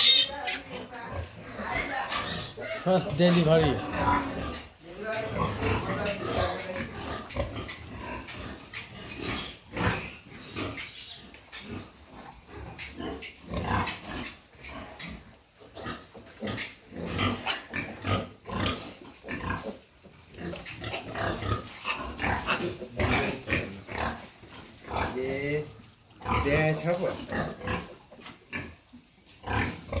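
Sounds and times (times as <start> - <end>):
pigs grunting and squealing: 0.0 - 30.0.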